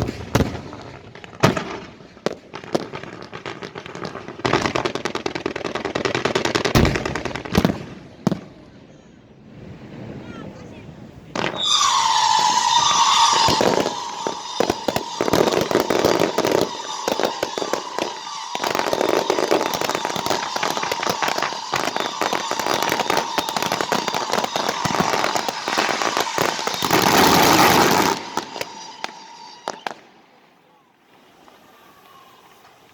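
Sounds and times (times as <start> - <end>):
fireworks crackling: 0.0 - 8.6, 9.5 - 32.9
fireworks shrill whistle: 11.4 - 30.2, 31.1 - 32.9.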